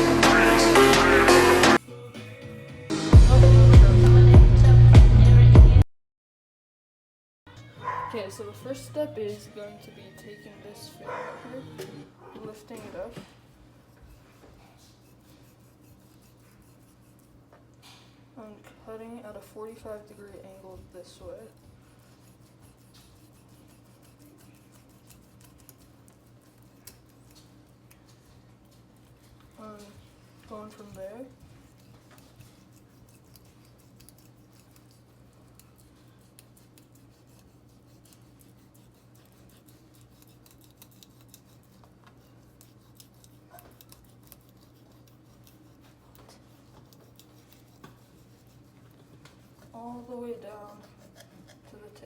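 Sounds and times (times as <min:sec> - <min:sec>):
knife cutting fish: 0:13.8 - 0:17.5, 0:21.2 - 0:52.0.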